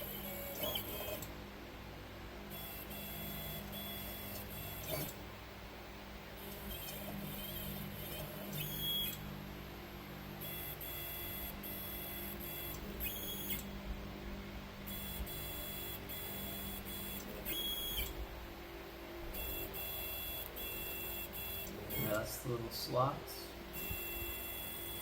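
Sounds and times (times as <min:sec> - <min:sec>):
stepper motors whining: 0:10.4 - 0:13.7, 0:14.9 - 0:18.2, 0:19.4 - 0:22.9.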